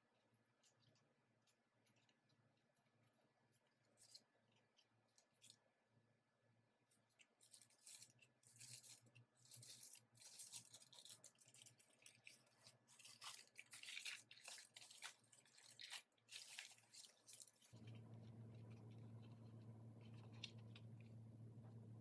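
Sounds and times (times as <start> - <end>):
packaging rustling and scraping: 7.4 - 21.1.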